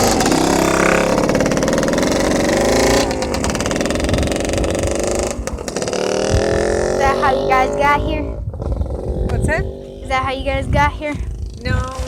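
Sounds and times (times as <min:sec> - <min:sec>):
dirt bike engine running: 0:00.0 - 0:12.0.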